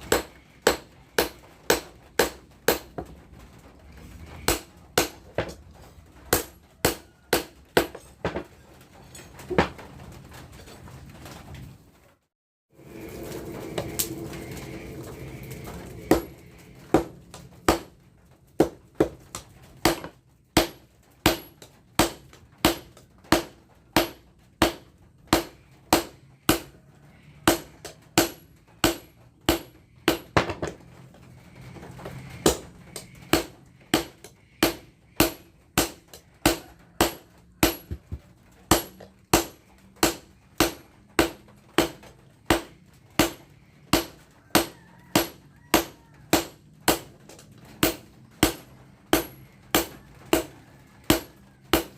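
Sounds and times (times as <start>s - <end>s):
hammer striking steel: 0.0s - 3.1s, 4.4s - 5.6s, 6.3s - 8.5s, 13.0s - 18.0s, 19.8s - 26.8s, 27.4s - 30.7s, 32.4s - 50.5s, 51.1s - 51.9s.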